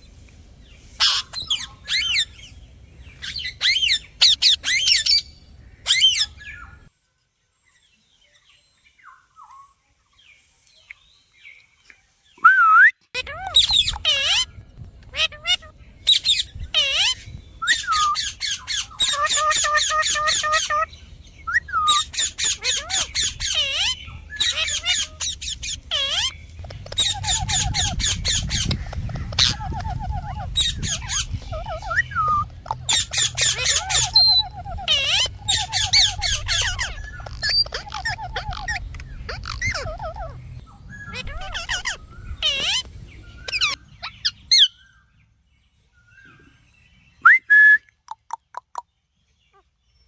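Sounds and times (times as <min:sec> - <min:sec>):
parrot chirping and squawking: 0:01.0 - 0:02.6, 0:03.2 - 0:06.6, 0:13.2 - 0:44.8.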